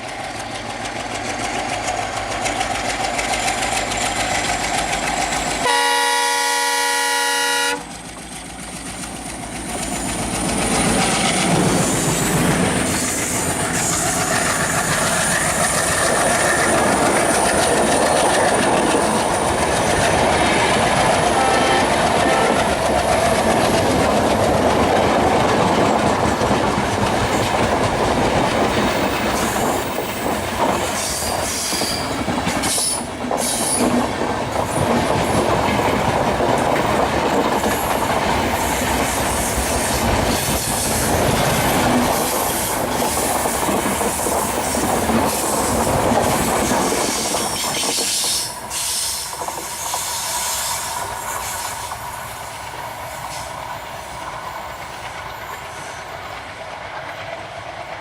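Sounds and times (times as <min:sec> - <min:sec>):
diesel locomotive engine running: 0:00.0 - 0:47.3
train passing with clatter: 0:00.0 - 0:58.0
locomotive horn: 0:05.6 - 0:07.9, 0:21.3 - 0:22.7.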